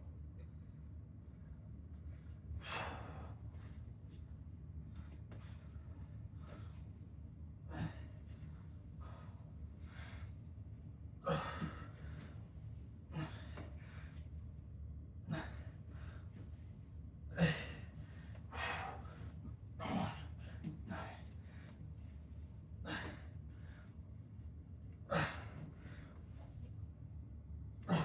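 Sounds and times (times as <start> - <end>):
man breathing hard: 2.6 - 3.4, 17.4 - 21.8.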